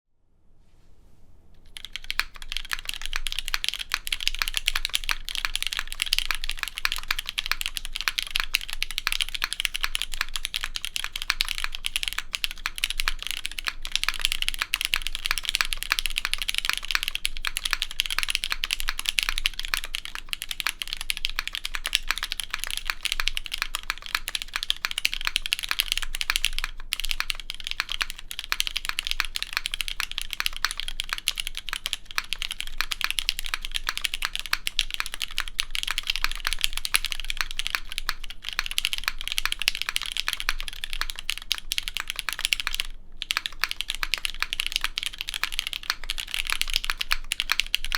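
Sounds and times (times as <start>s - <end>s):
fast mechanical keyboard typing: 1.7s - 47.9s.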